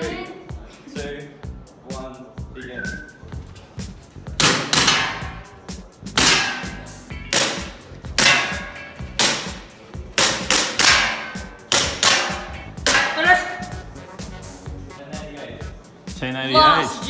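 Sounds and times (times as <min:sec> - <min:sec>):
toy pistol shots: 0:04.4 - 0:05.6, 0:06.2 - 0:13.7.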